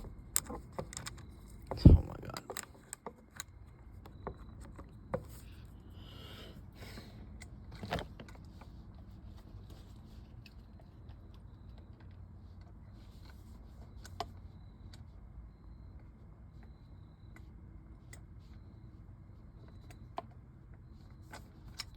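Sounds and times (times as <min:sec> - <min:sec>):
parts clicking and knocking: 0:00.0 - 0:05.5
low steady hum: 0:00.0 - 0:21.9.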